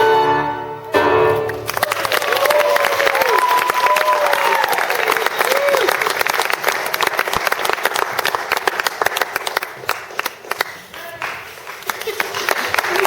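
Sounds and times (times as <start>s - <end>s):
audience applauding: 1.5s - 13.0s.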